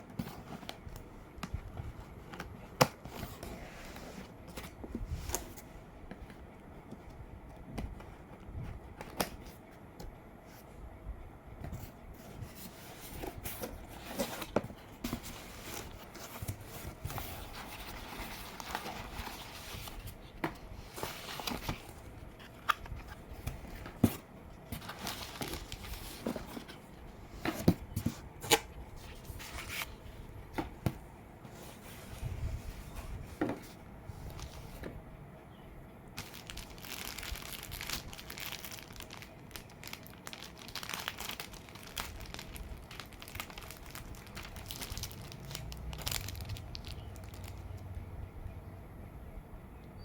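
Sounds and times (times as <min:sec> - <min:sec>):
packaging rustling and crinkling: 0:11.7 - 0:34.9, 0:36.1 - 0:47.8.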